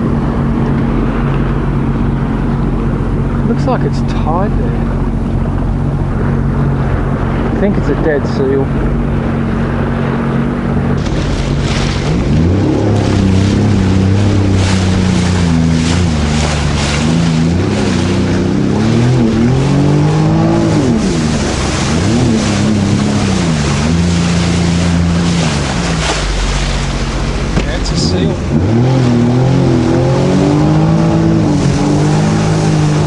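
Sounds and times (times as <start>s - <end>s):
jet ski engine revving: 0.0s - 33.0s
water splashing against hull: 0.0s - 33.0s.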